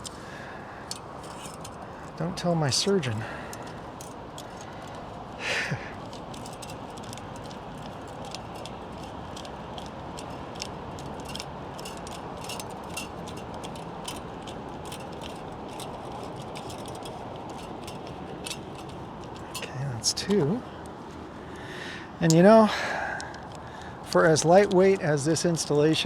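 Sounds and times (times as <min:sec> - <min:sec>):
steady background hiss: 0:00.0 - 0:06.1, 0:18.7 - 0:26.0.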